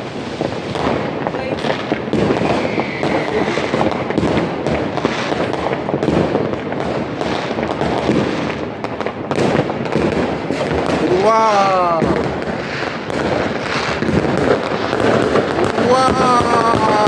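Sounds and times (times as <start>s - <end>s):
firework whistle: 0.0s - 6.2s, 10.4s - 17.0s
firecrackers crackling: 0.0s - 17.0s
rocket bangs: 0.0s - 17.0s.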